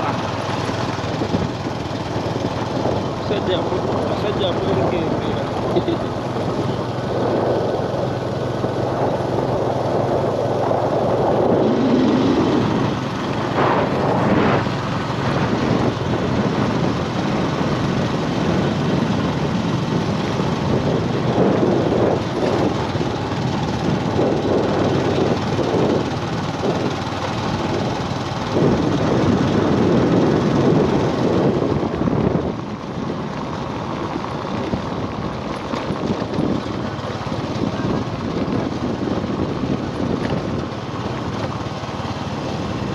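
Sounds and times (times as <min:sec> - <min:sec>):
vehicle engine running: 0:00.0 - 0:42.9
rushing noise: 0:06.4 - 0:26.0.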